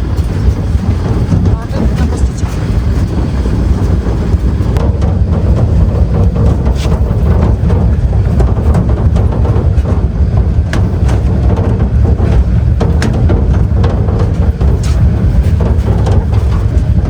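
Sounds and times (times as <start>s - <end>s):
vehicle engine and road rumble: 0.0s - 17.0s
vehicle knocks and rattles: 0.0s - 17.0s.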